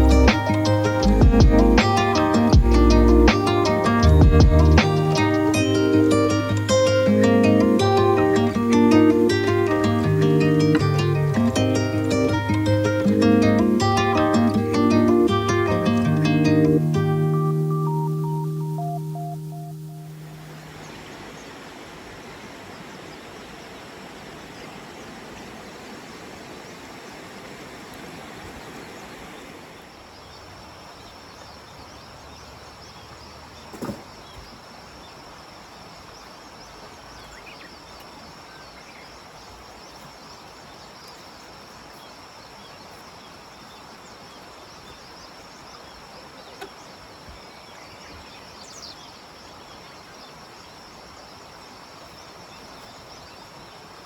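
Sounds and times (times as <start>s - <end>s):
high insect trill: 0.0s - 17.0s
background hiss: 0.0s - 54.0s.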